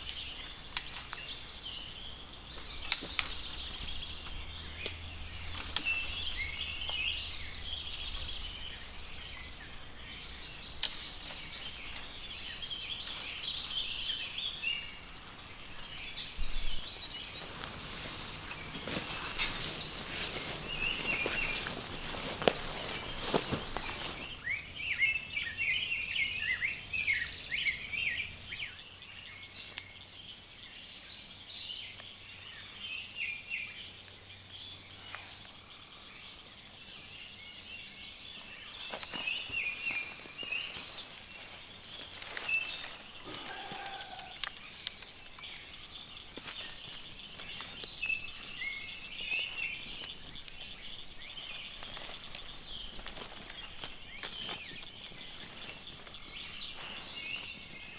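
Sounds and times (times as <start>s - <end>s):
songbirds singing: 0.0s - 57.9s
faint clicks: 10.6s - 12.2s.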